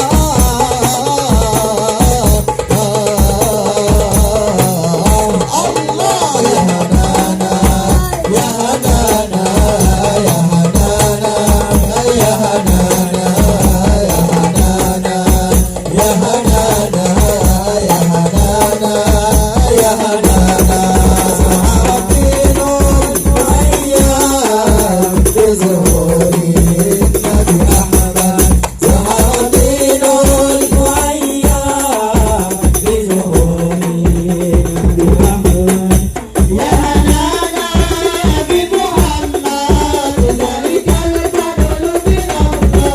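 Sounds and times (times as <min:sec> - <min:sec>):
frame drums and bass drum: 0:00.0 - 0:42.9.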